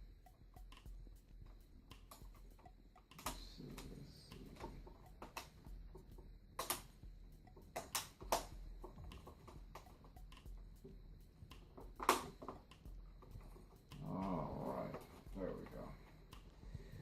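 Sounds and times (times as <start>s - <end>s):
hard plastic parts clicking: 1.9s - 10.9s.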